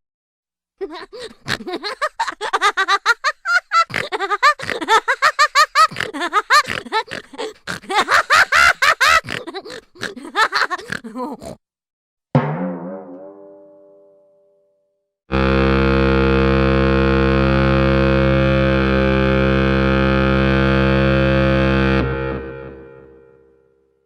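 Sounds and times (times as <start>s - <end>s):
sped-up squeaky voice jabbering: 5.8s - 11.6s.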